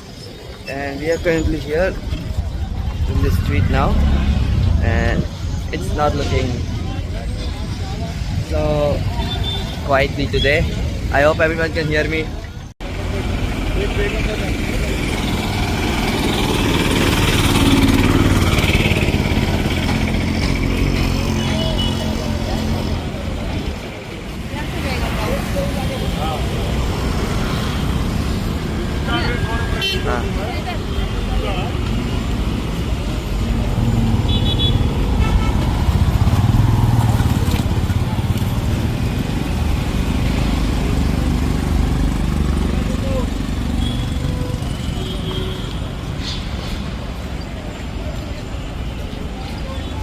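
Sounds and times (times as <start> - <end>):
road traffic rumble: 0.0 - 50.0
vehicle engines passing: 0.0 - 50.0.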